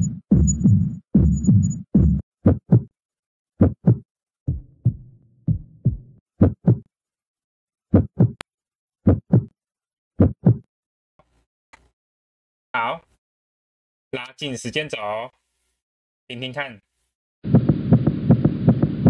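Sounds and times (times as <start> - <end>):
heartbeat thumps: 0.0 - 2.9, 3.6 - 6.9, 7.9 - 8.4, 9.0 - 9.5, 10.2 - 10.7, 17.5 - 19.0.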